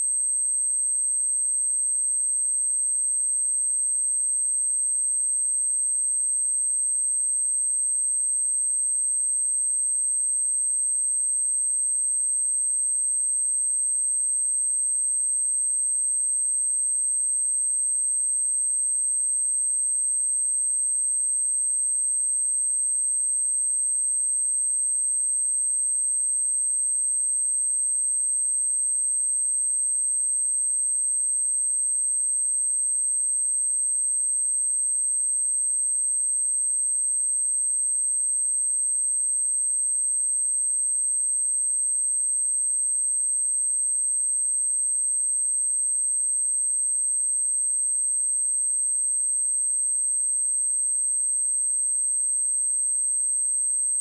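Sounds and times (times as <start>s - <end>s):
high-pitched sine test tone: 47.9s - 54.0s.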